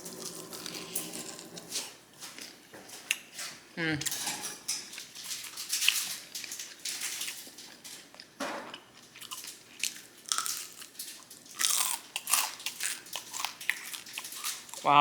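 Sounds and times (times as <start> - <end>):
crunchy chewing: 5.0 - 14.8.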